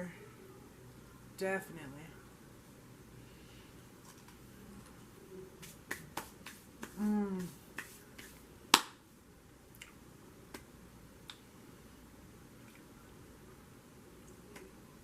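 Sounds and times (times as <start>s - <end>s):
person humming: 7.0s - 7.6s.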